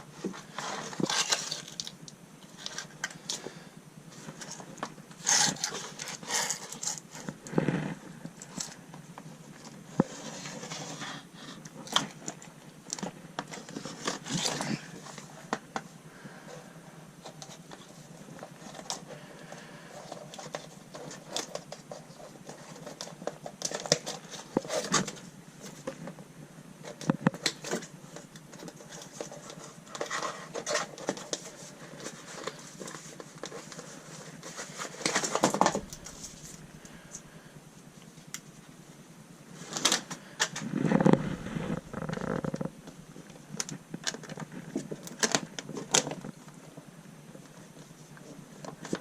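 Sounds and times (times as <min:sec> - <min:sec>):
crinkling and rustling mats: 0:00.0 - 0:49.0.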